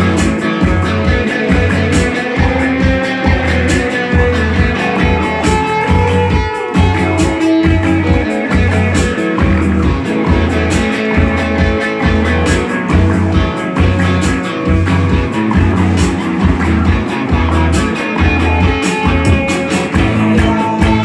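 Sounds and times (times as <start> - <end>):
crisp drum strikes: 0.0 - 21.0
electric guitar: 0.0 - 21.0
repeating bass line: 0.0 - 21.0.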